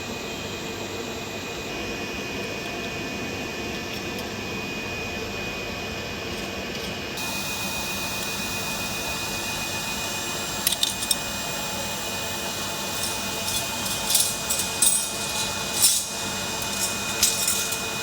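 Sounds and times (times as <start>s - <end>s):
machine whirring with high whine: 6.9s - 18.0s.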